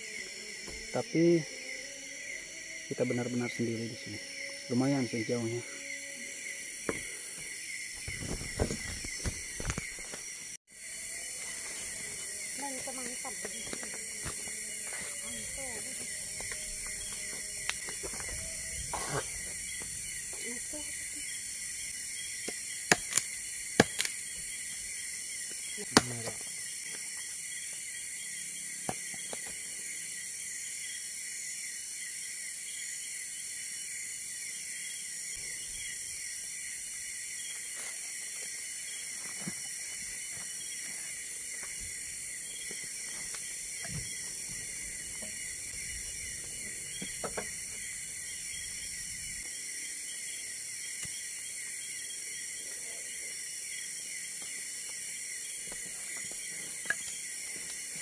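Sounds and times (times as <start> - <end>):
night insects trilling: 0.0 - 58.0.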